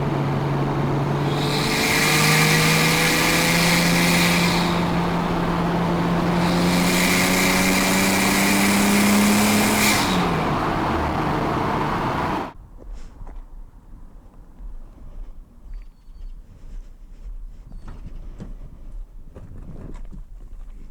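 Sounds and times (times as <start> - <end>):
turbo hiss: 0.0 - 12.5
car engine under load: 0.0 - 12.6.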